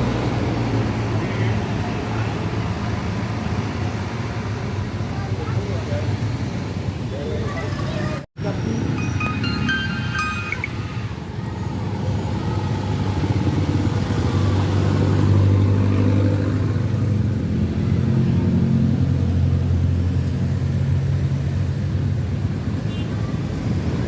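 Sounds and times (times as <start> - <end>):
bus engine passing: 0.0 - 24.0.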